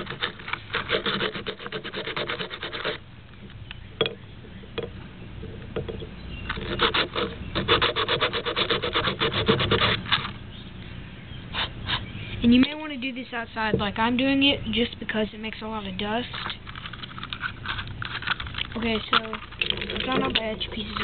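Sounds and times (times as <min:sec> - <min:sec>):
plastic piece scraping on sandpaper: 0:00.0 - 0:03.0, 0:06.5 - 0:10.4.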